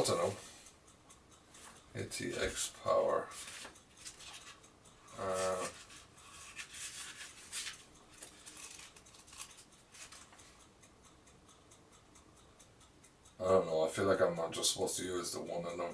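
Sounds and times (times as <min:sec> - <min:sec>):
rustling and handling clicks: 0:03.3 - 0:04.6.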